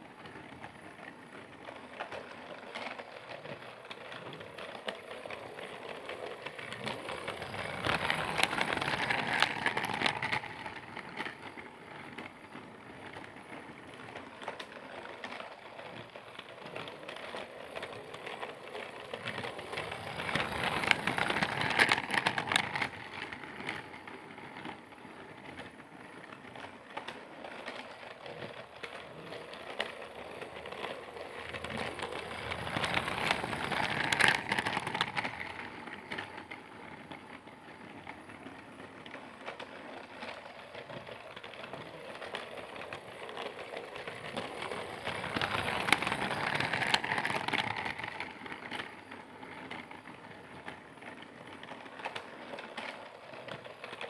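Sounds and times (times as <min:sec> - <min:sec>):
train clattering and clicking: 0:00.0 - 0:54.0.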